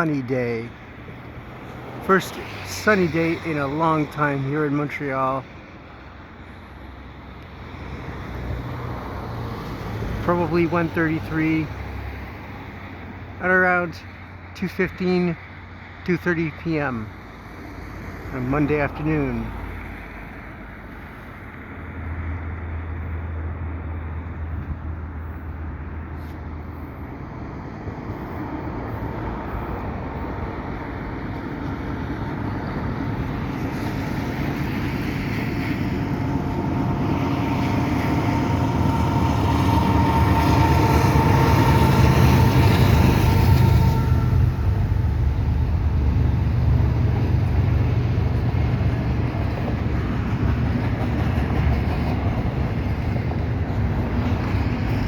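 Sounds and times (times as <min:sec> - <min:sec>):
freight train passing: 0:00.0 - 0:55.0
locomotive engine whine: 0:17.9 - 0:55.0.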